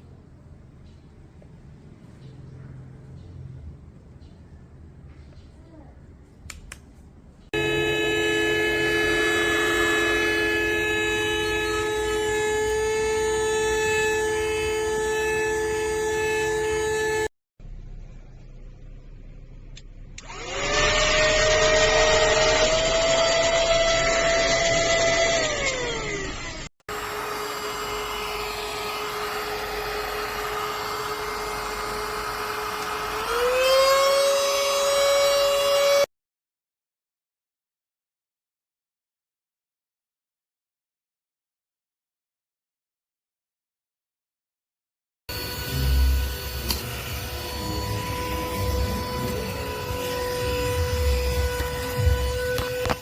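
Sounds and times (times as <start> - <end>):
handheld vacuum cleaner running: 7.6 - 17.3, 20.2 - 36.1, 45.3 - 53.0.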